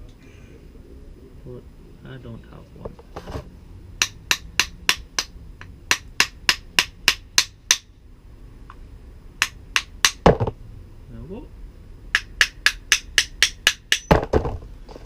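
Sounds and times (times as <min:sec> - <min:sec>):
hammer tapping metal: 0:04.0 - 0:07.9, 0:09.4 - 0:10.3, 0:12.1 - 0:14.3
heavy knock: 0:10.1 - 0:10.6.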